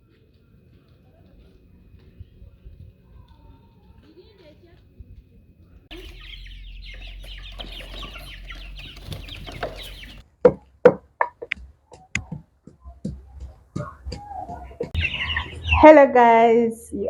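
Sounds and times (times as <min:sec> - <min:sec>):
chicks peeping and chirping: 0:05.9 - 0:10.2, 0:13.0 - 0:16.0.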